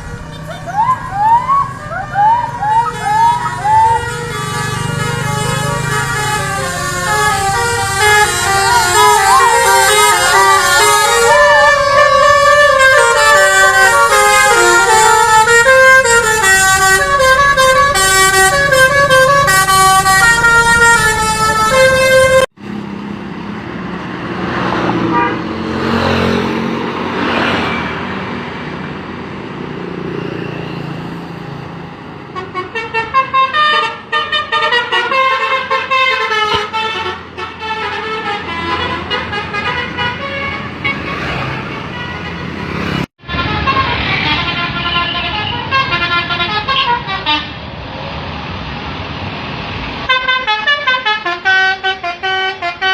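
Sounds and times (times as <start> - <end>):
bus passing: 0.0 - 52.9
bus musical horn melody: 1.7 - 22.6, 25.1 - 25.5, 32.3 - 47.6, 50.1 - 52.9.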